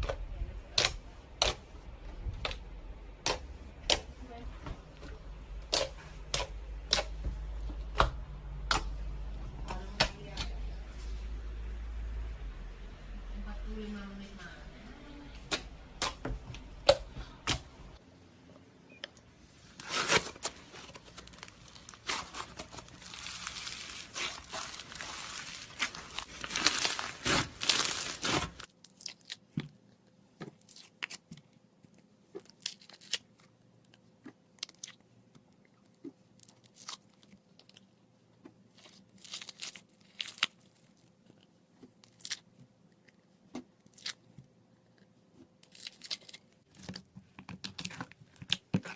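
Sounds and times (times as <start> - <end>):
slime crackling and popping: 19.8 - 29.5, 38.8 - 40.8.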